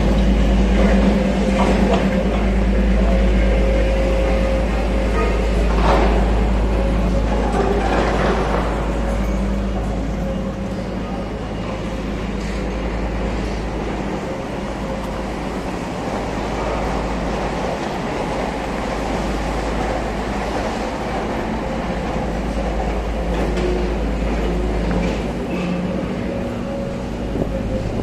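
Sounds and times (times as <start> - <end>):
train rumbling past: 0.0 - 28.0.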